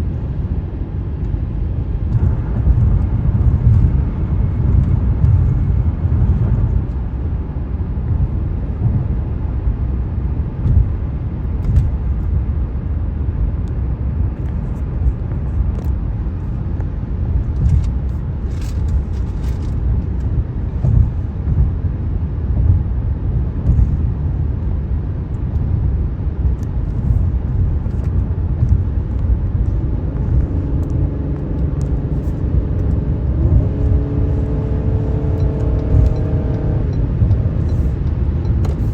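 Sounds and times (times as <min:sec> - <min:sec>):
tyre and road rumble: 0:00.0 - 0:38.9.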